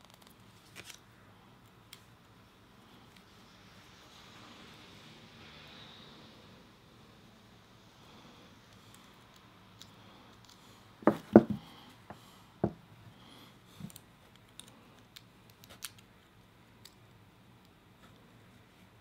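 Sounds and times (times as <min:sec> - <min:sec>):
plastic parts clicking: 0:13.8 - 0:16.1.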